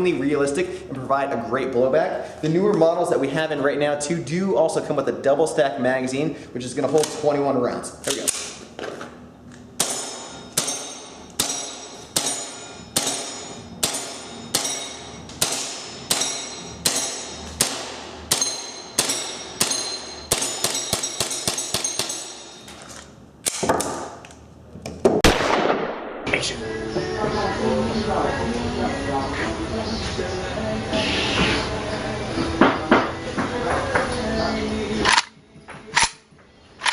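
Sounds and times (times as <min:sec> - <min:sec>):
airsoft pistol shots: 0:09.8 - 0:22.4, 0:25.2 - 0:26.2.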